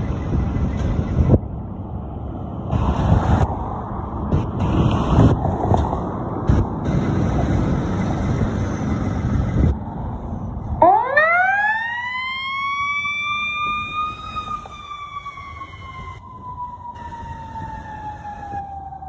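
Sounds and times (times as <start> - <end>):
road and vehicle noise: 0.0 - 19.0
fire engine siren: 10.8 - 19.0.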